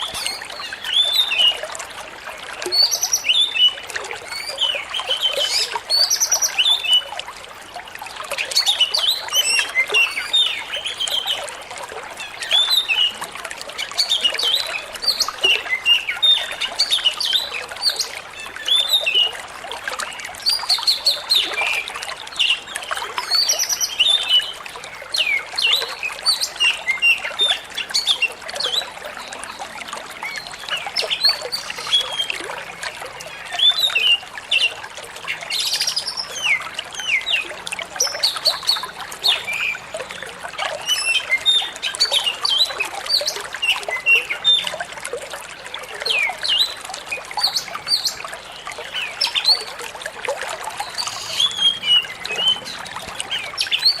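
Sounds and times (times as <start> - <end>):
trickling water: 0.0 - 54.0
bird singing chirps and whistles: 50.8 - 52.7.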